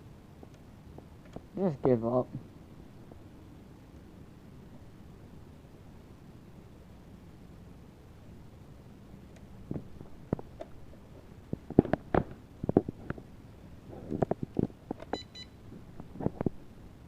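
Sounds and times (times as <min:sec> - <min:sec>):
short electronic beep: 0:15.2 - 0:15.6.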